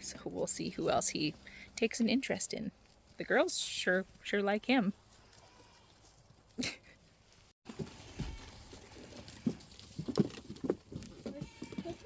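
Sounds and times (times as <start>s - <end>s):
rustling: 0.4s - 12.0s
goat hooves knocking: 7.7s - 12.0s.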